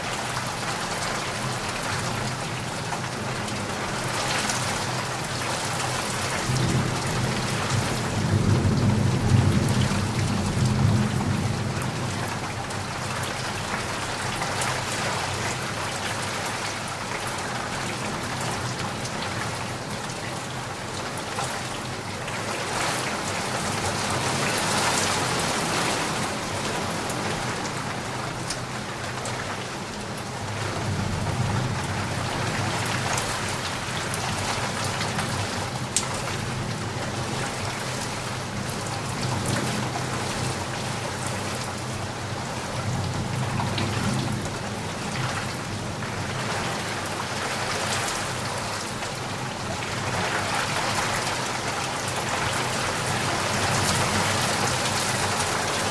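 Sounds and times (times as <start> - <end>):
heavy rain falling: 0.0 - 55.9.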